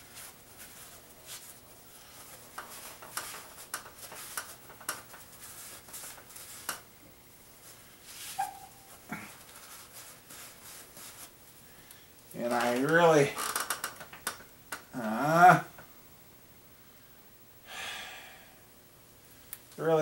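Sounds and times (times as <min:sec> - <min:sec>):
cloth rag wiping metal: 0:07.7 - 0:11.4.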